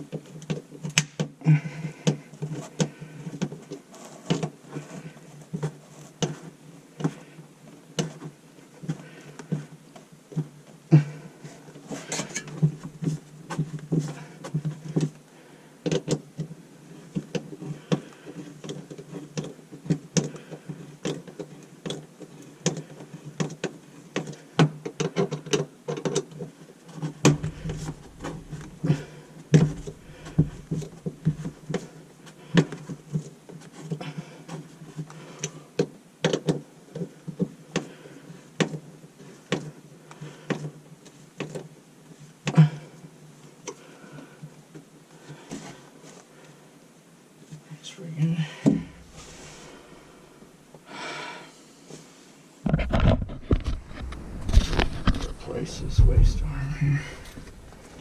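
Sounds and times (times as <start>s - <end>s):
low hum: 27.4s - 31.0s, 52.7s - 58.0s.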